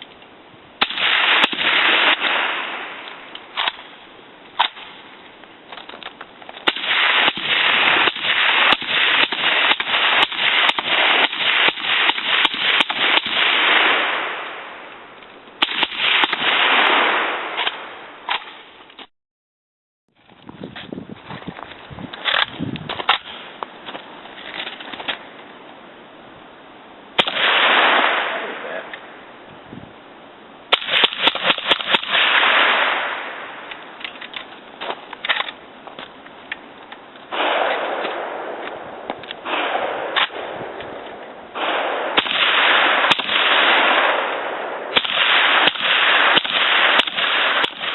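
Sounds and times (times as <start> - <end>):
suppressed gunshots: 27.2 - 28.4, 30.7 - 33.3, 37.3 - 38.8, 39.4 - 47.9.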